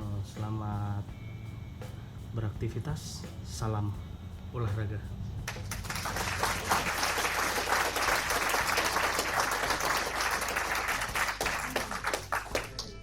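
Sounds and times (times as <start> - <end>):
crowd applause: 5.5 - 13.0.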